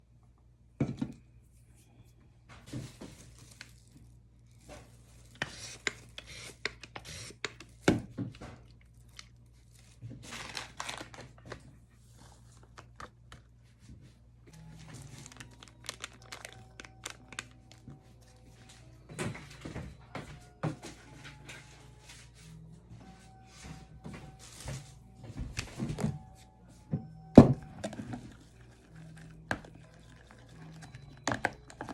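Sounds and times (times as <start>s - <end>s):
faint music: 0.0s - 31.9s
low steady hum: 0.0s - 31.9s
crinkling and tearing: 8.6s - 13.5s, 14.6s - 17.9s.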